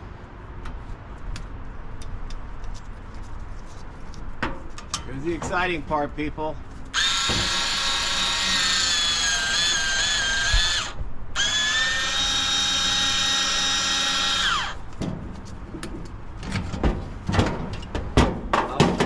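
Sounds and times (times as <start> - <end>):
power drill whining: 7.0 - 14.8.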